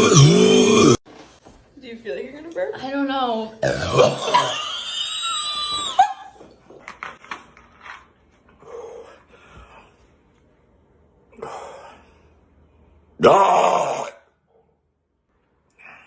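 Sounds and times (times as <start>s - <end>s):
high-pitched strained vocal sound: 0.0s - 1.0s.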